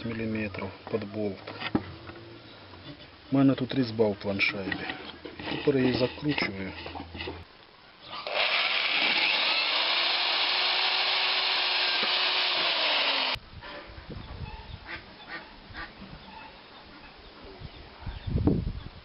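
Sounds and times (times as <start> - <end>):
power tool on wood: 8.2 - 13.4.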